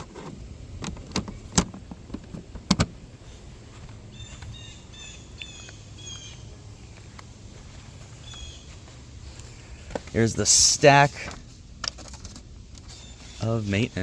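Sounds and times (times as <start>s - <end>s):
low steady hum: 0.0s - 14.0s
bird chirping high calls: 4.1s - 6.6s, 8.0s - 9.0s.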